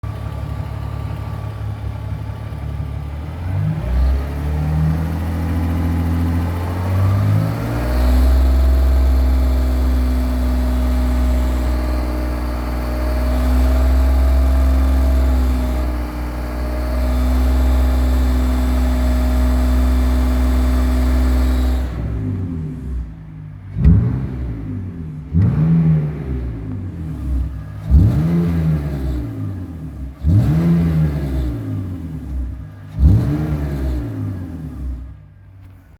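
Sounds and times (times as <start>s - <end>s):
car engine running and revving: 0.0s - 35.9s
strange car noise: 0.0s - 35.9s.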